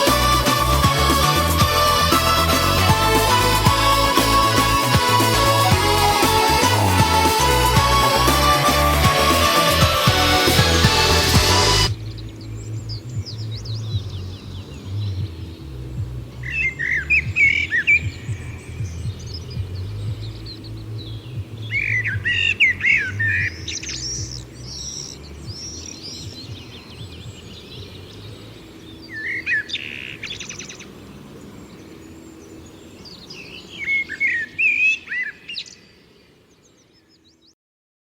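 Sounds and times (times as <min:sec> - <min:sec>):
birds chirping: 0:00.0 - 0:37.6
low background hum: 0:11.9 - 0:37.3.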